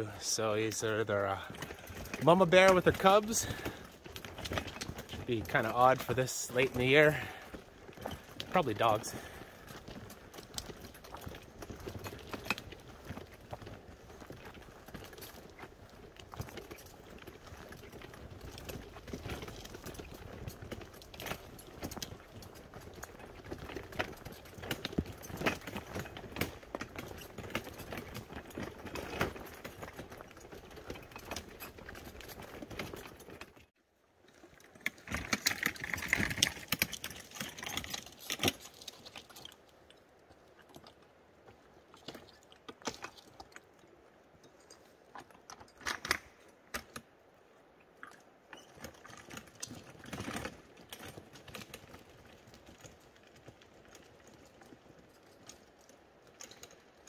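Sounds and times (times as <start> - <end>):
footsteps on a trail: 0.0 - 33.7
hand wagon rattling: 0.0 - 47.1, 48.0 - 57.0.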